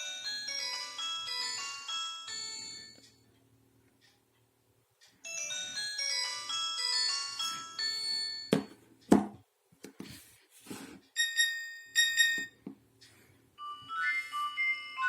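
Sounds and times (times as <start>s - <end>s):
phone ringtone melody: 0.0s - 3.1s, 5.2s - 8.7s, 11.2s - 12.6s, 13.6s - 15.0s.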